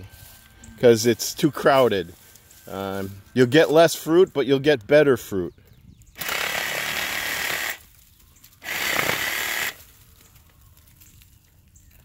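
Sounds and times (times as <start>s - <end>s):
power saw cutting branch: 6.2s - 7.9s, 8.6s - 9.9s.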